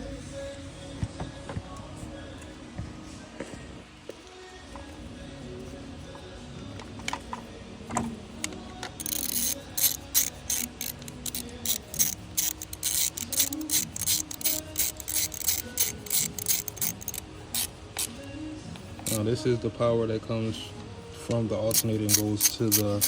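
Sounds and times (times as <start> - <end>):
ratchet wrench clicking: 6.8 - 19.3, 21.7 - 23.0.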